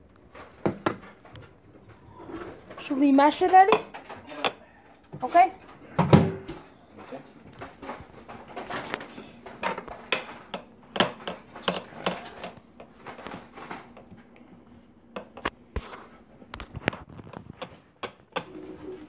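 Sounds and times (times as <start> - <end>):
utensil clinking and scraping dish: 6.5 - 14.5.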